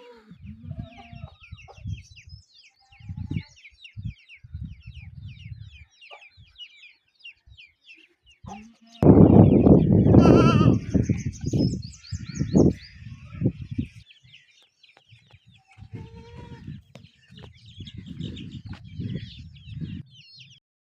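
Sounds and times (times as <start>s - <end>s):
small birds chirping: 0.0s - 20.6s
chickens clucking: 8.4s - 11.3s.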